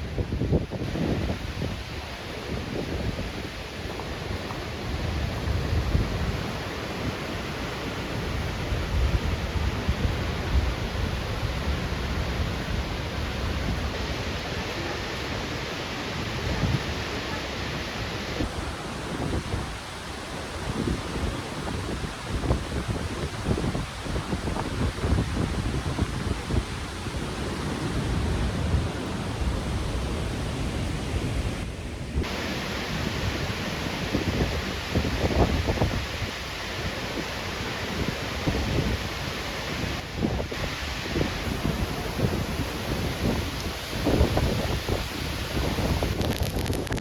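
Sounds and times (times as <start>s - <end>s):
waterfall roaring: 0.0s - 47.0s
wind buffeting microphone: 18.2s - 47.0s.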